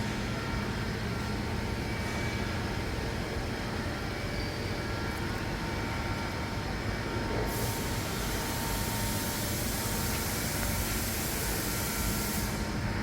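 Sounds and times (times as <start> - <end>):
workshop machinery drone: 0.0 - 13.0
loud high hiss: 7.5 - 12.8.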